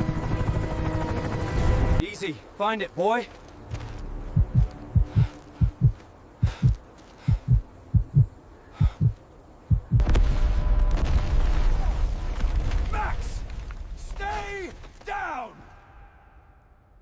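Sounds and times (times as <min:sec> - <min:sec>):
heartbeat thumps: 0:04.3 - 0:10.1.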